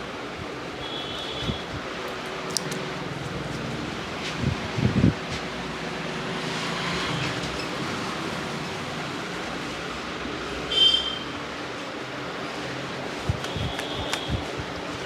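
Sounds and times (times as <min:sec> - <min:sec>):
street traffic noise: 0:00.0 - 0:15.0.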